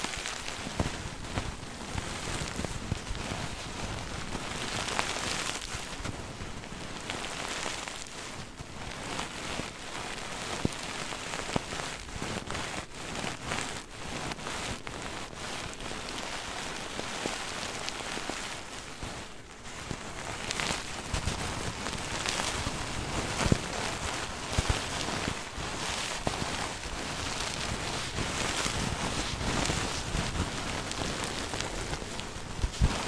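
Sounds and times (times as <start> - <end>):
plush pillow rubbed and scratched: 7.0 - 33.0.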